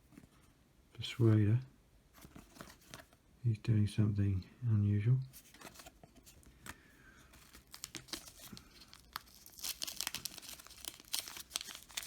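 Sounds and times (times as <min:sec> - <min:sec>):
paper crinkling and tearing: 0:07.4 - 0:12.0.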